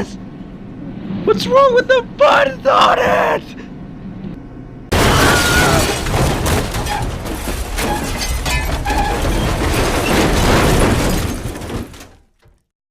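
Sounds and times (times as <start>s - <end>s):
loud crash: 4.9s - 12.3s
rumbling and clattering: 4.9s - 12.6s
short squeals: 5.0s - 12.2s.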